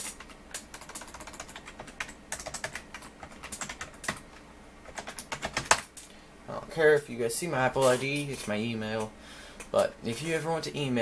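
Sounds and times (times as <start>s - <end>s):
typing on computer keyboard: 0.0s - 6.1s.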